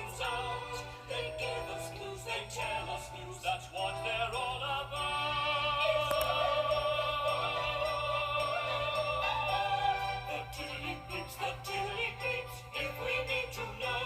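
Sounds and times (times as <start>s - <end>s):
operatic singing with music: 0.0s - 14.0s.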